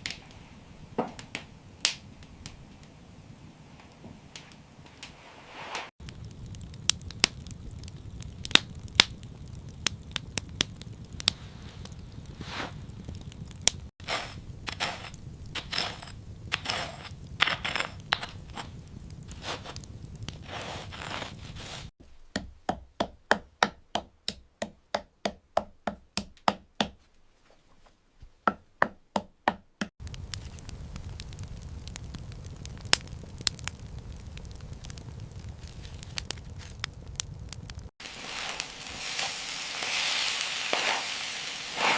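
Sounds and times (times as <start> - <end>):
low rumble: 30.0 - 37.9.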